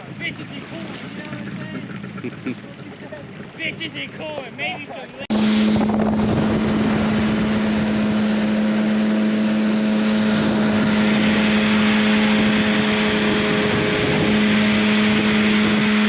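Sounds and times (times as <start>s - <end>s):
jet ski engine running: 0.0s - 16.0s
rushing noise: 5.3s - 16.0s.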